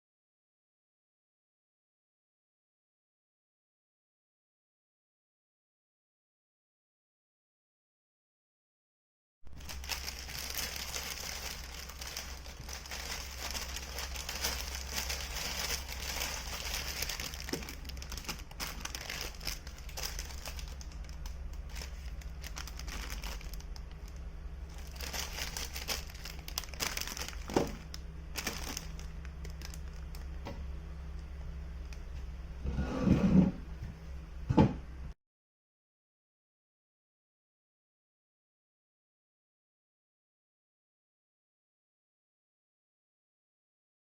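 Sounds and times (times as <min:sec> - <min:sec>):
plastic packet crinkling: 0:09.5 - 0:30.4.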